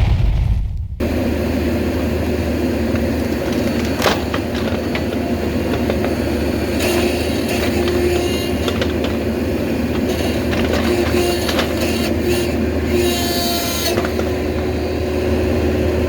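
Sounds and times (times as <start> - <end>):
loud boom: 0.0 - 1.1
engine running steadily: 1.0 - 12.9.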